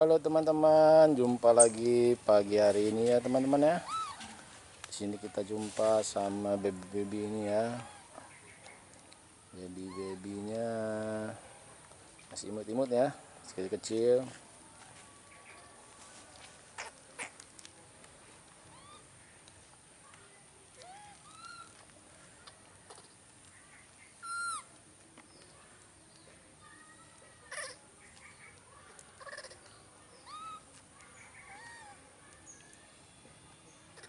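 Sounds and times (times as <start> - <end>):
baby monkeys crying: 3.7 - 4.5, 6.2 - 8.2, 9.8 - 10.3, 18.7 - 19.1, 20.8 - 21.8, 24.2 - 24.7, 27.5 - 27.8, 29.2 - 32.0.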